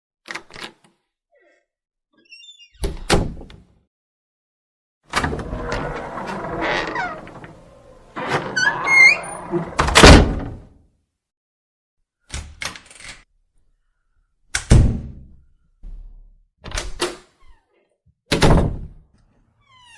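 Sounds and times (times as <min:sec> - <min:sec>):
door creaking: 0:02.2 - 0:03.4, 0:05.1 - 0:10.7
door shutting thud: 0:05.2 - 0:10.7.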